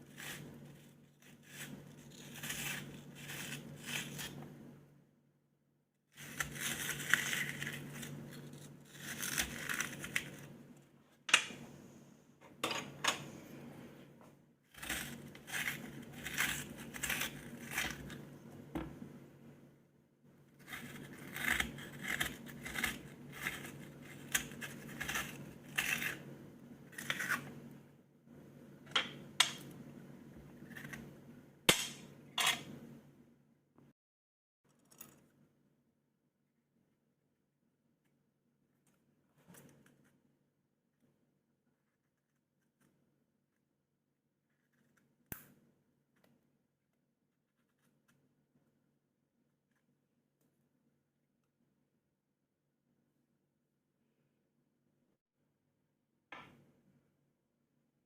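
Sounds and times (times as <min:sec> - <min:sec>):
knife crunching through onion: 0:00.0 - 0:04.4, 0:06.2 - 0:10.6, 0:14.7 - 0:18.3, 0:20.6 - 0:26.3, 0:26.9 - 0:27.6, 0:30.5 - 0:31.1.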